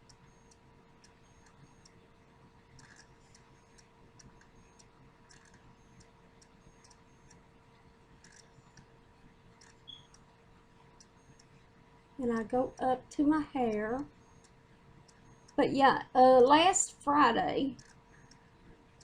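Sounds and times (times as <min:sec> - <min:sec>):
soft ticks: 0:00.0 - 0:02.0, 0:02.7 - 0:11.7, 0:13.6 - 0:15.6, 0:17.8 - 0:19.0.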